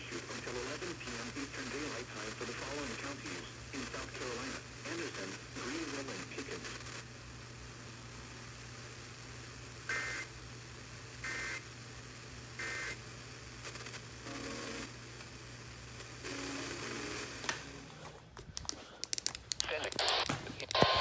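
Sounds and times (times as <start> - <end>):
two-tone buzzy data warble: 19.7 - 21.0.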